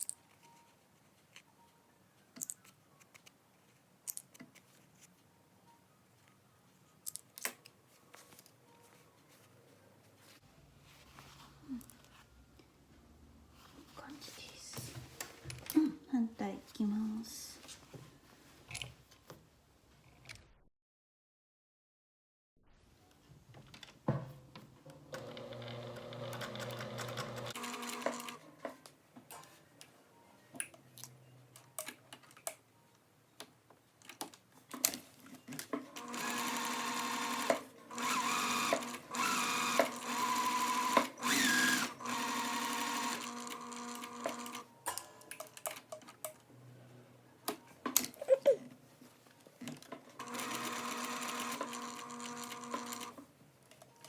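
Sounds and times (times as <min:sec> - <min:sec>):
sewing machine stitching: 0:25.2 - 0:28.4, 0:35.9 - 0:44.6, 0:50.1 - 0:53.2.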